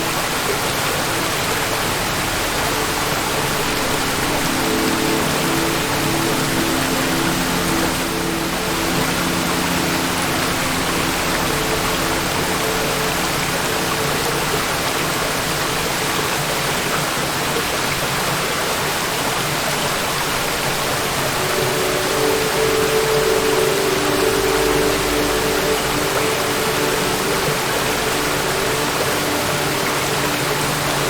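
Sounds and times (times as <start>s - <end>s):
waterfall rushing: 0.0s - 31.0s
faint low steady tones: 20.9s - 31.0s.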